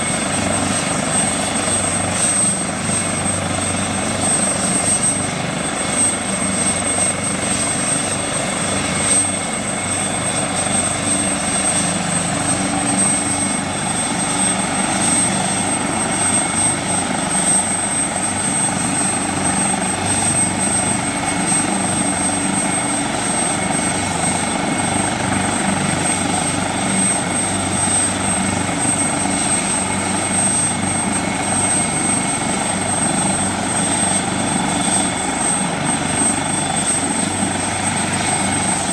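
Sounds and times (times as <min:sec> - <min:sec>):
helicopter rotor and engine noise: 0:00.0 - 0:38.9
helicopter turbine whine: 0:00.0 - 0:38.9.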